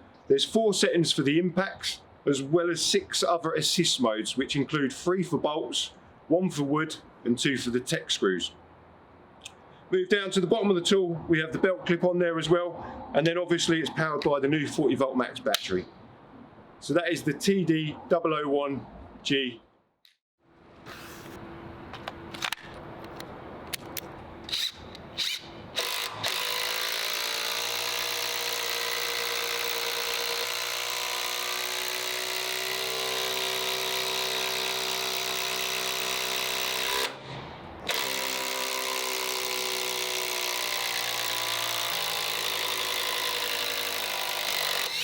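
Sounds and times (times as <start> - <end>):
impact driver running: 24.5 - 37.2, 37.9 - 45.0.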